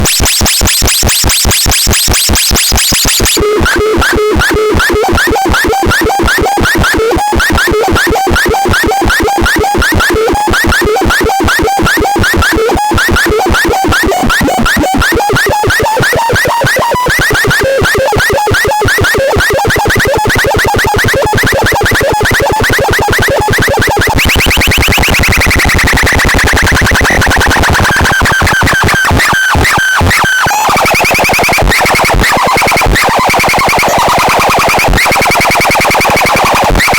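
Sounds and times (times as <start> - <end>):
pulsing synthesized warbling tones: 13.0 - 18.4.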